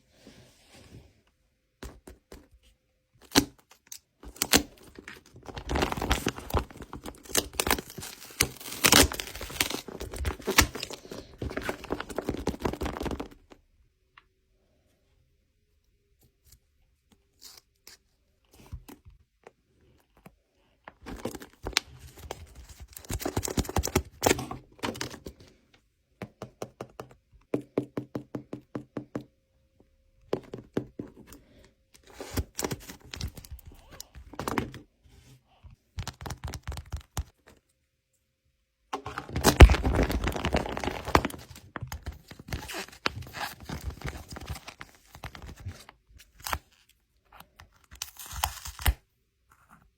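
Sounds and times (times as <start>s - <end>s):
paper crinkling and tearing: 4.2s - 13.4s, 39.0s - 46.8s.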